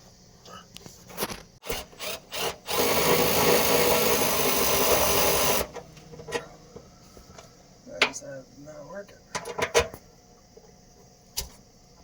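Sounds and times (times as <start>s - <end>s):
power drill running: 1.6s - 5.8s.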